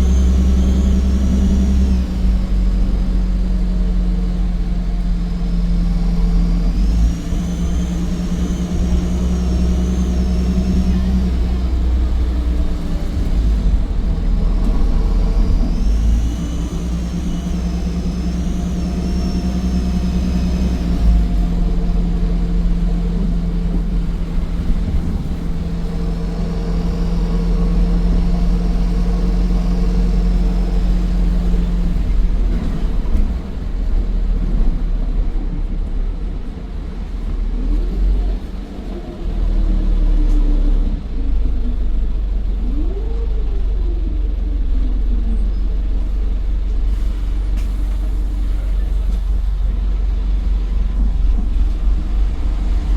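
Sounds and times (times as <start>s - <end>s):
high turbo whine: 0.0s - 34.7s
bus diesel engine hum: 0.0s - 52.9s.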